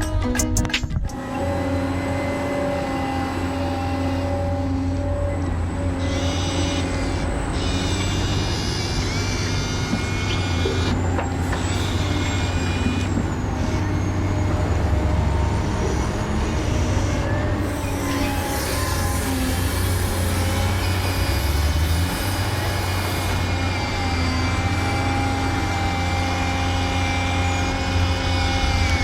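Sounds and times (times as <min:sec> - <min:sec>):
model truck motor hum: 0:01.1 - 0:29.0.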